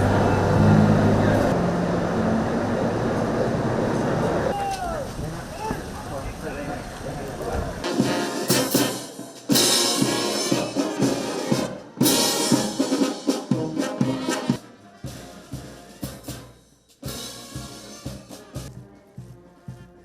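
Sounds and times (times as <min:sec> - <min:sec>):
music with brass and drums: 0:07.8 - 0:20.0.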